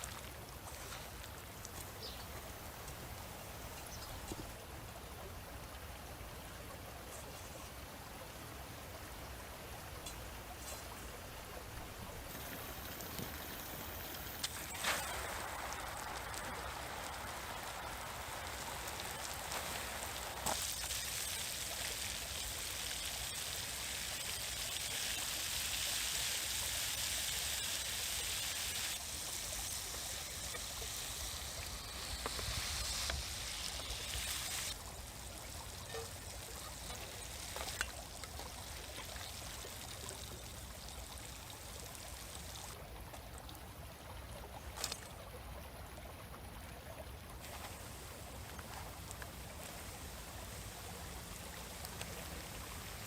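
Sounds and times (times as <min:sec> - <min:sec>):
liver sizzling in oil: 0:13.5 - 0:35.2.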